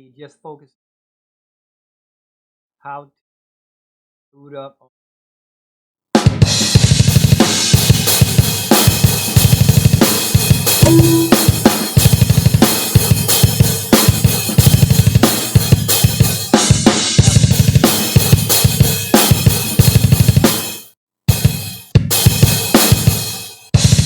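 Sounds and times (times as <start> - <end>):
drum-heavy music with fast beat: 6.2 - 24.0.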